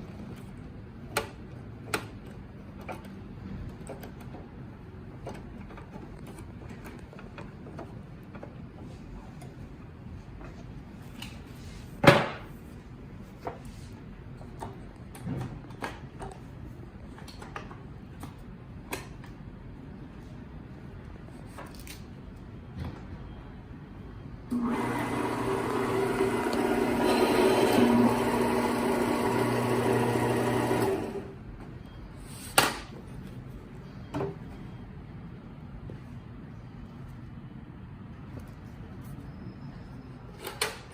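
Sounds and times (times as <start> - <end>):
paper drill motor humming whine: 24.5 - 31.3.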